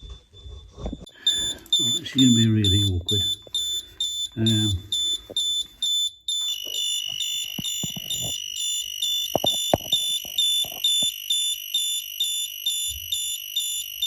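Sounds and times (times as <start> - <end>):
steady high tone: 1.1 - 11.2
voltage tester warble beeping: 1.1 - 14.0
clicks and knocks of probe handling: 6.4 - 8.4.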